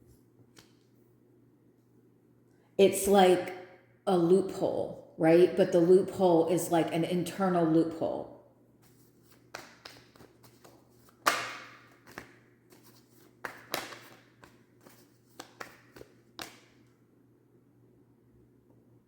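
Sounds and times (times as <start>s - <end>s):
cards tapping and clicking on table: 9.5s - 16.8s.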